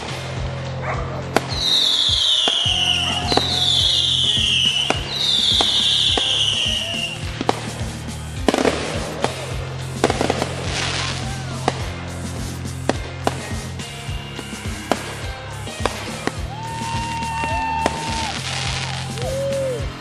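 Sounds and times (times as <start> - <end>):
electronic music with bass: 0.0 - 20.0
fireworks bangs and pops: 0.0 - 20.0
high falling firework whistles: 1.4 - 7.3, 16.1 - 20.0.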